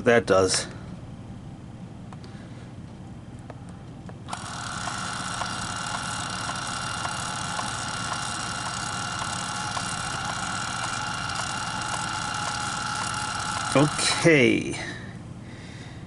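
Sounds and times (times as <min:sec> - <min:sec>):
label maker ticking: 0:04.3 - 0:14.2
label maker motor whine: 0:04.3 - 0:14.6.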